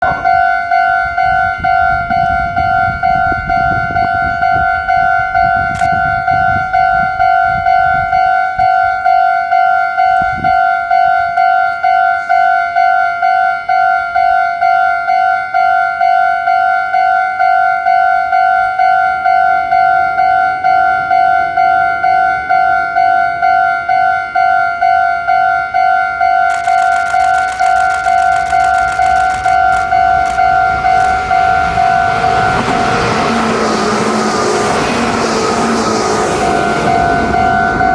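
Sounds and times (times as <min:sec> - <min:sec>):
level crossing warning bell ringing: 0:00.0 - 0:33.8
low rumbling noise: 0:26.5 - 0:37.9.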